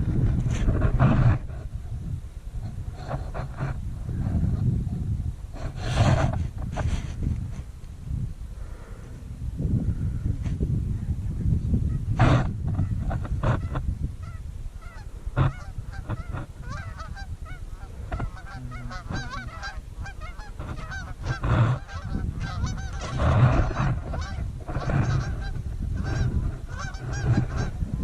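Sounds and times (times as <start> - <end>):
geese honking: 12.8 - 27.8.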